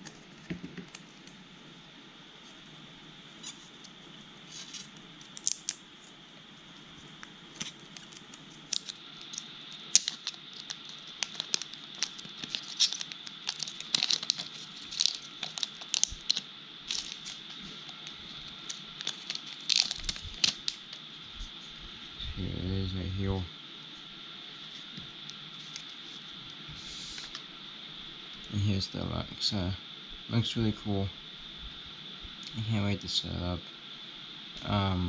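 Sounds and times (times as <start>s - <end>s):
air conditioning hum: 0.0s - 35.0s
packaging crinkling and tearing: 7.6s - 21.0s.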